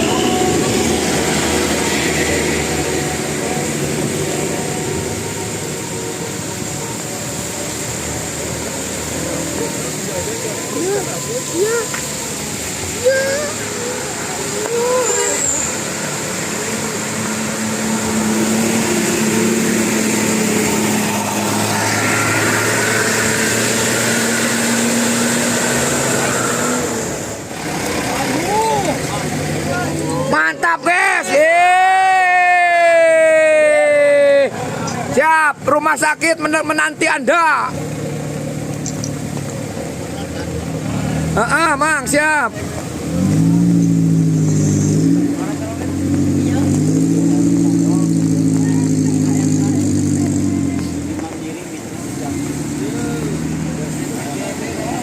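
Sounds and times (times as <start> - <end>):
bus driving past: 0.0 - 30.6, 42.4 - 55.0
vehicle engine running: 42.5 - 55.0.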